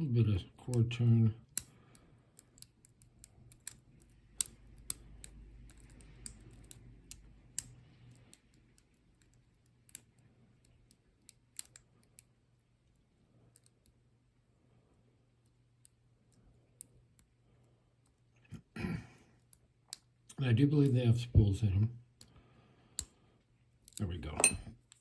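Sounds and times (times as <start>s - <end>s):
lock pick clicking in padlock: 2.4s - 12.3s.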